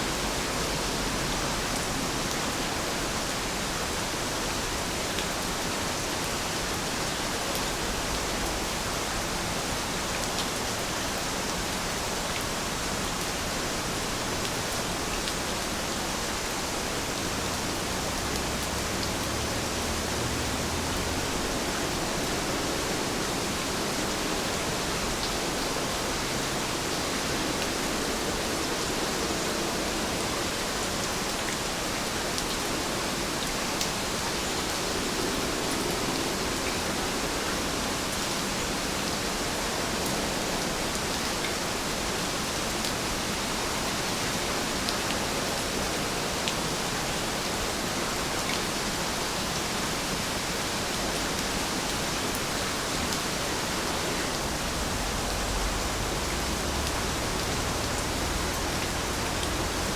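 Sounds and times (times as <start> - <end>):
heavy rain: 0.0 - 59.9
rain drop ticks: 56.2 - 59.9.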